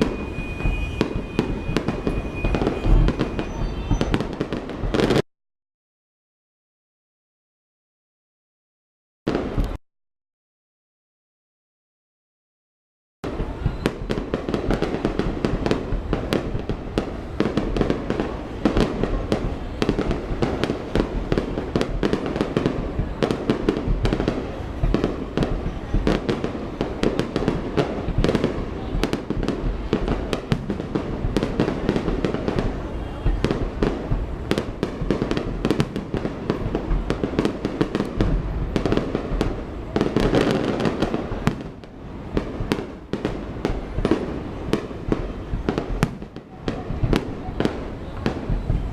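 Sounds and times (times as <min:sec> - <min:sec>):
fireworks bangs and crackles: 0:00.0 - 0:05.2, 0:09.3 - 0:09.8, 0:13.2 - 0:48.9.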